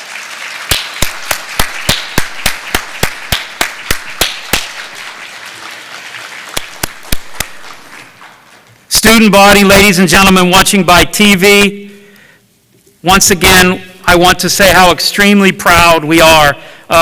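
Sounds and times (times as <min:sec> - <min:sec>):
close loud claps: 0:00.0 - 0:08.5
audience applauding: 0:00.0 - 0:08.6.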